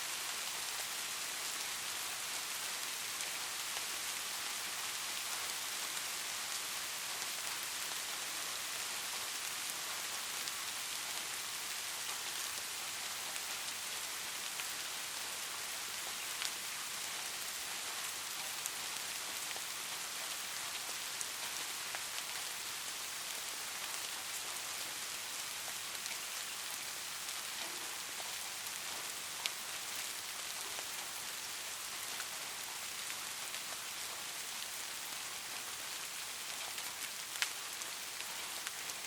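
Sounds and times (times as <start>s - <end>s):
rain on a hard surface: 0.0s - 39.0s.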